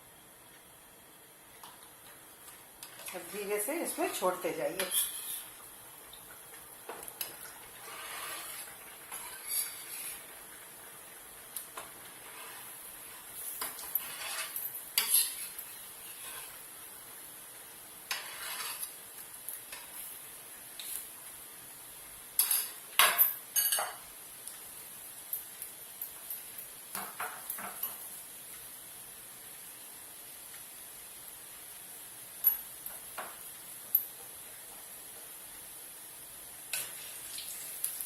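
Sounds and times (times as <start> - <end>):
dough frying in hot oil: 0.0 - 38.0
metal spoon clinking and scraping pan: 4.1 - 5.5, 7.2 - 10.2, 13.6 - 16.6, 18.1 - 19.0, 22.4 - 24.0.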